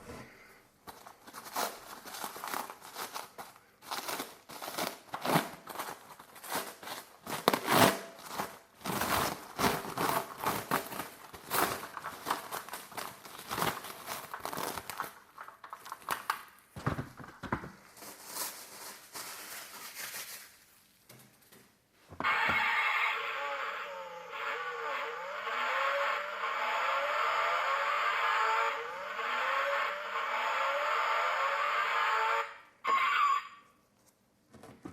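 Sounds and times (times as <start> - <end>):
packaging crinkling: 0.8 - 21.6.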